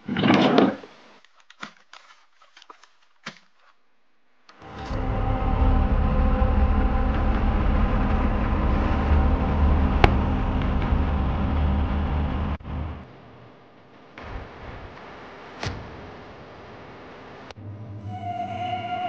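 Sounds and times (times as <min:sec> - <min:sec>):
vehicle engine rumbling: 0:04.6 - 0:13.3
loud burst of noise: 0:04.6 - 0:17.6.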